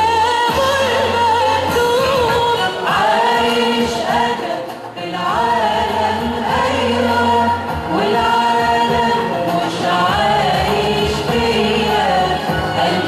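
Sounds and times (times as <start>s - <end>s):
church choir singing a hymn: 2.7s - 13.0s.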